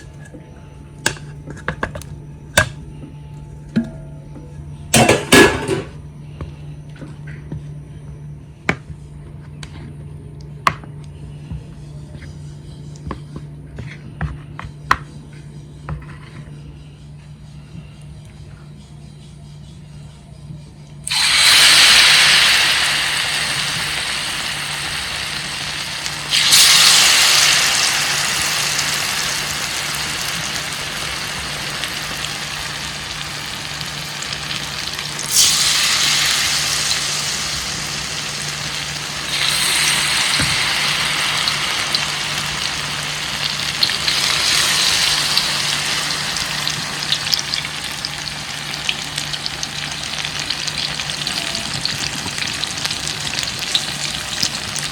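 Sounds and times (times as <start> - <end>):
food sizzling in hot oil: 21.0 - 54.9.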